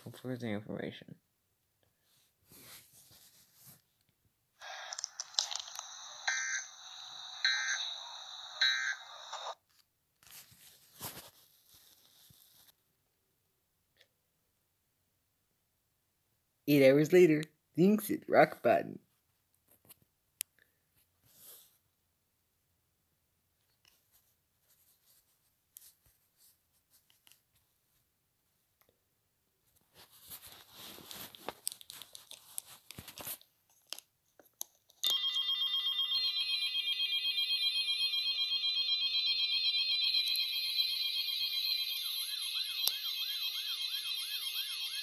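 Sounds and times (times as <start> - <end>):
faint crackly noise: 2.5 - 12.8
soft clicks and scratches: 9.3 - 12.8, 23.6 - 27.7, 29.7 - 35.0.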